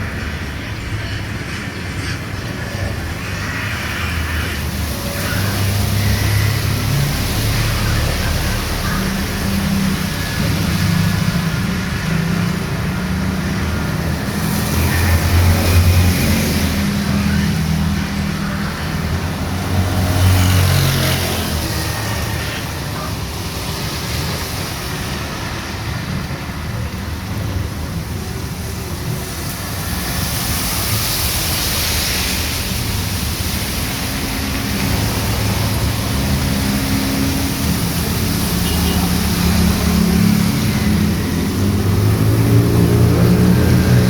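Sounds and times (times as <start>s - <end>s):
heavy rain falling: 0.0s - 44.0s
vehicles passing on wet street: 0.0s - 44.0s.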